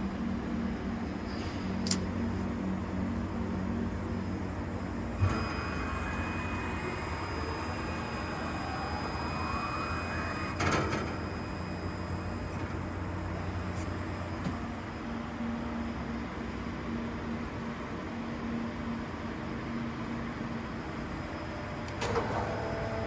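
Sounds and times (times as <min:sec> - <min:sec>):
steady machine hum: 0:00.0 - 0:23.0
motor whine rising in pitch: 0:04.8 - 0:14.8
machine clunk: 0:10.5 - 0:11.4, 0:22.0 - 0:22.7.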